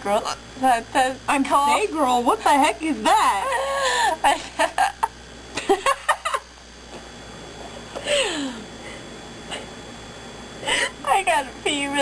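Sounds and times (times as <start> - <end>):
girls giggling: 3.5 - 6.5.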